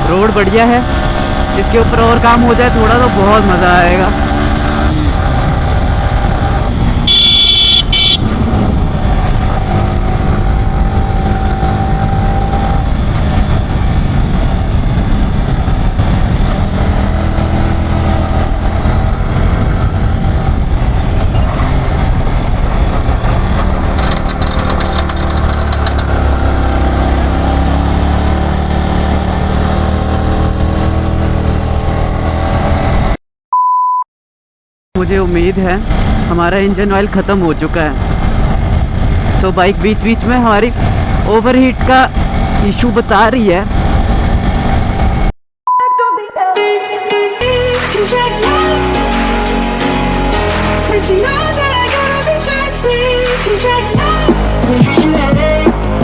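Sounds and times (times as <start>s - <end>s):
road and wind noise: 0.0s - 33.2s, 35.0s - 45.4s, 47.3s - 56.0s
horn honk: 7.0s - 8.3s
steady beep: 33.5s - 34.0s, 45.7s - 46.4s.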